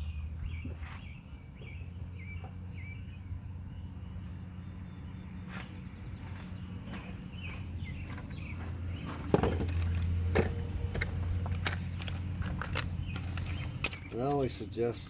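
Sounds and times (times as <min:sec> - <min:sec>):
birds chirping: 0:00.0 - 0:15.0
steady low hum: 0:00.0 - 0:15.0
clicks and knocks of engine parts: 0:06.9 - 0:15.0.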